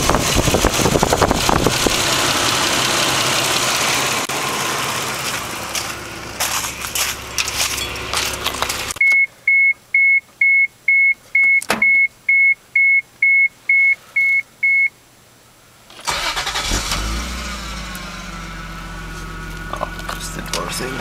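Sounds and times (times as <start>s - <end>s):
car engine starting and idling: 0.0s - 9.0s, 15.9s - 21.0s
dashboard warning chime beeping: 9.0s - 14.9s.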